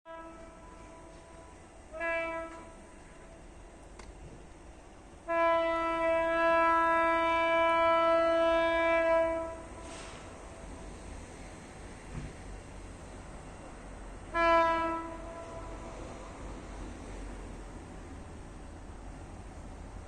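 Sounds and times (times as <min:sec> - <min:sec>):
locomotive air horn blasts: 0:00.1 - 0:03.4, 0:05.2 - 0:10.6, 0:14.2 - 0:16.3.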